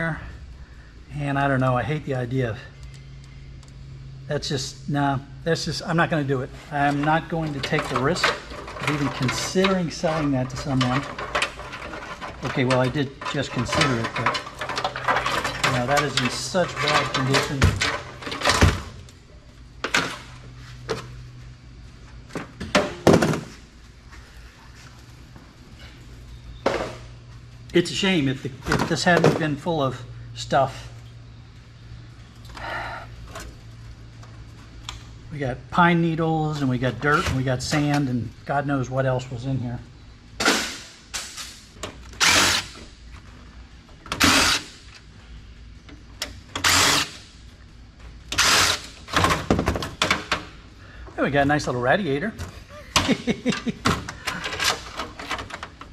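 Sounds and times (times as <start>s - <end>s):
computer parts thunking: 6.9s - 19.0s, 52.4s - 55.9s
power drill bursts: 42.2s - 42.8s, 44.2s - 44.7s, 46.6s - 47.2s, 48.4s - 48.9s.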